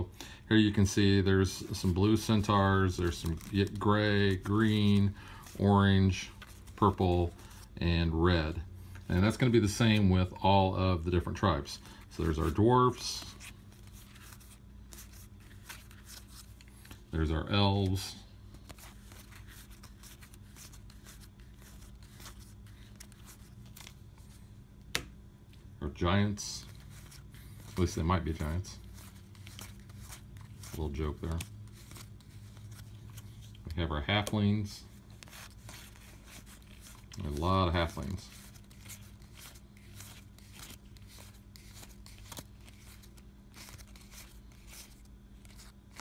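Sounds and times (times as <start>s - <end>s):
low steady hum: 0.0s - 46.0s
playing cards rustling: 0.0s - 46.0s
playing cards snapping and ticking: 24.8s - 25.2s.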